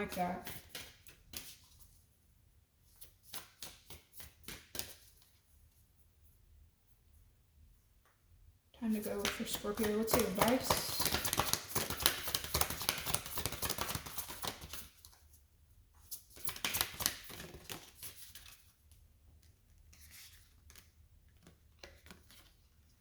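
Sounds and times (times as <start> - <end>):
cards being shuffled: 0.0 - 2.0, 2.9 - 5.4, 9.0 - 15.3, 16.1 - 18.7, 19.4 - 23.0.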